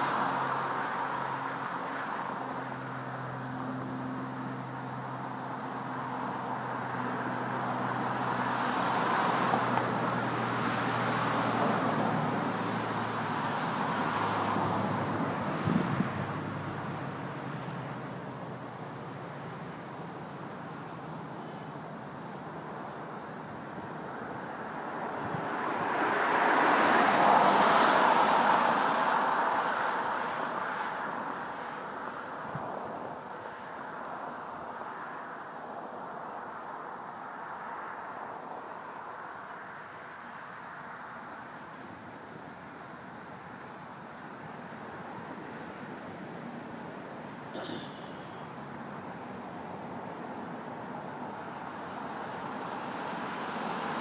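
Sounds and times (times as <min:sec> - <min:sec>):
vehicle engine hum: 0:00.0 - 0:37.8
cars passing: 0:00.0 - 0:54.0.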